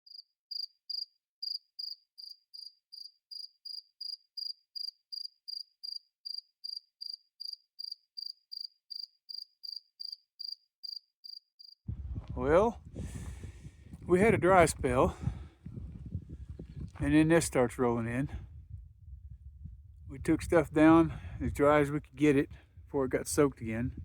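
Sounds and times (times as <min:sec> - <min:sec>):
cricket chirping: 0:00.0 - 0:11.8.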